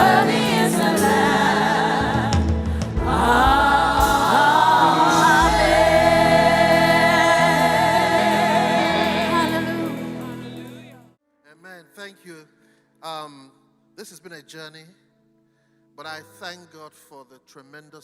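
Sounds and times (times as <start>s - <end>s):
voices singing gospel song: 0.0s - 11.0s
band playing: 0.0s - 11.1s.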